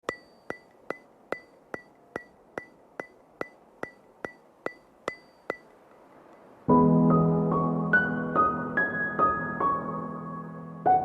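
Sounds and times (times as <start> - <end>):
sharp ringing ticks: 0.0 - 6.6.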